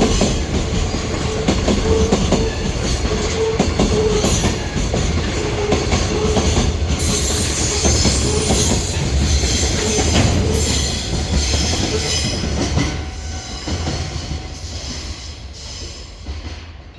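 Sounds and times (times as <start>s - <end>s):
train wagons rumbling past: 0.0s - 16.9s
high wheel squeal: 7.0s - 12.8s.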